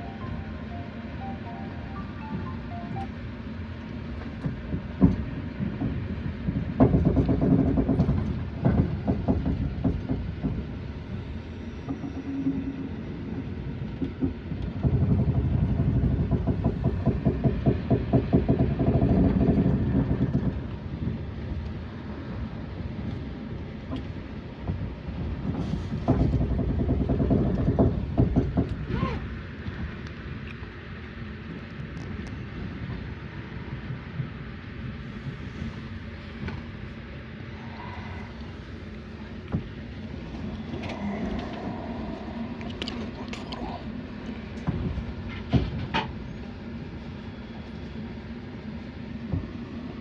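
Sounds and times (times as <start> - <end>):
train wheels clattering over rails: 4.1 - 43.2, 44.1 - 47.1.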